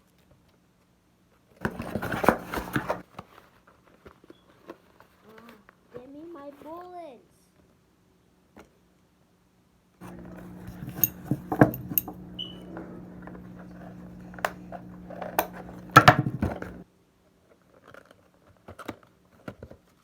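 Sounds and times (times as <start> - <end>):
steady low hum: 10.0 - 16.8.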